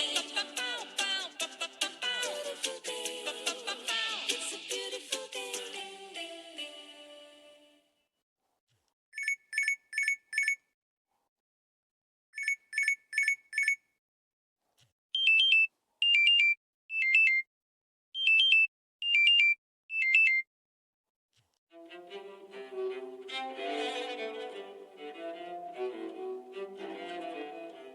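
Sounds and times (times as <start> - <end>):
phone beeps: 9.2 - 10.6, 12.4 - 13.8, 15.2 - 17.5, 18.2 - 20.4.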